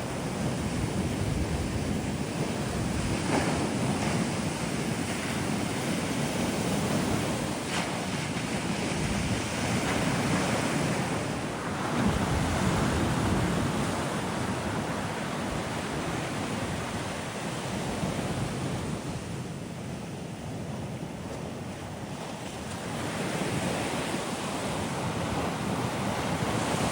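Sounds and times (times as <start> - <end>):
sea waves breaking on beach: 0.0 - 26.9
wind buffeting microphone: 0.0 - 26.9.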